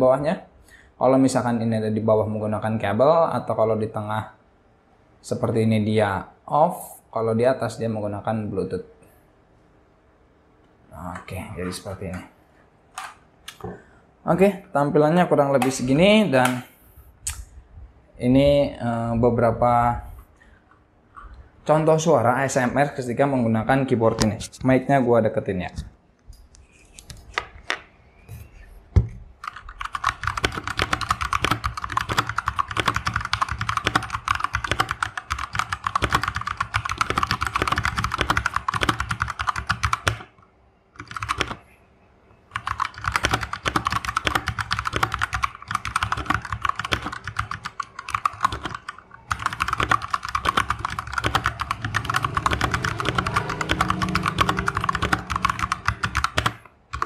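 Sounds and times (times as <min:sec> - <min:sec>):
mechanical keyboard typing: 0:29.4 - 0:40.3, 0:41.0 - 0:41.6, 0:42.5 - 0:57.0.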